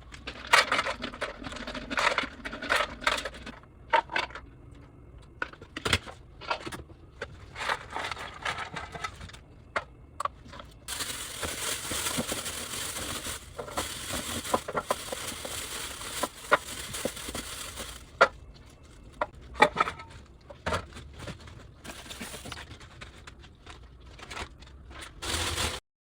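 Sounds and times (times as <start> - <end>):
crinkling and rustling: 6.0 - 25.8.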